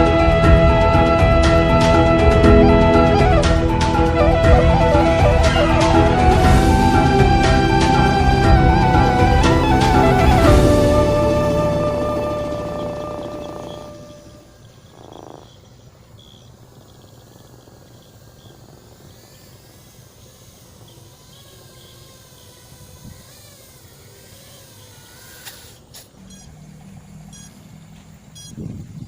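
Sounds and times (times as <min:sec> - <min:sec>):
drone motors whining: 0:00.0 - 0:29.0
low steady hum: 0:26.1 - 0:29.0.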